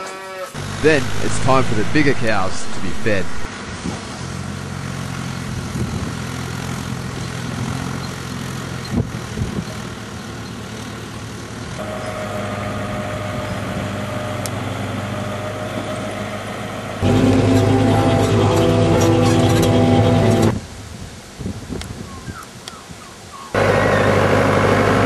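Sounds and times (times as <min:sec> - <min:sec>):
vehicle engine running at low revs: 0:00.6 - 0:20.8, 0:23.6 - 0:25.0
music: 0:17.0 - 0:20.5.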